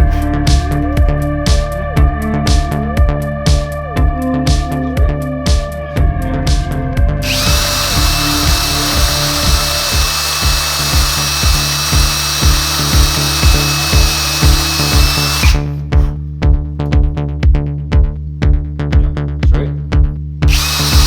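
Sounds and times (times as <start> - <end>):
background music with beat: 0.0 - 21.0
power drill spinning: 7.2 - 15.8, 20.5 - 21.0.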